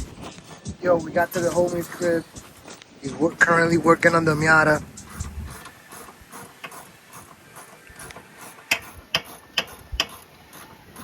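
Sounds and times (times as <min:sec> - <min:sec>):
sharp metallic clicks of hand tools: 0:04.4 - 0:10.7.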